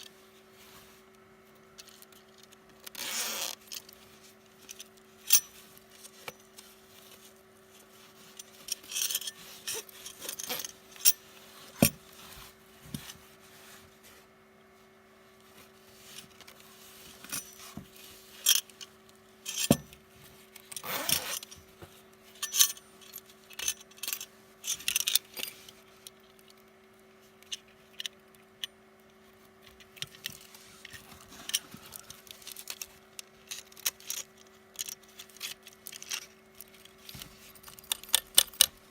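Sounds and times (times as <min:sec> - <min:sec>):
faint steady hum: 0:00.0 - 0:38.9
packaging rustling and scraping: 0:30.2 - 0:38.9.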